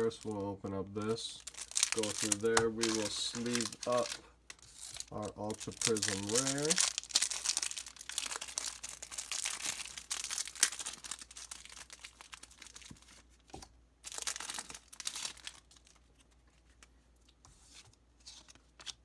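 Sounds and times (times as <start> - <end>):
plastic packaging crinkling and tearing: 0.0 - 0.5, 1.3 - 13.2, 14.0 - 16.3.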